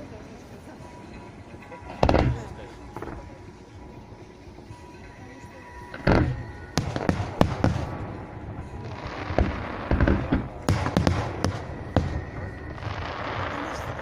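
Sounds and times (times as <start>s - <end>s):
firework crackling: 4.2s - 14.0s
firework shells bursting: 6.0s - 8.2s, 8.8s - 14.0s.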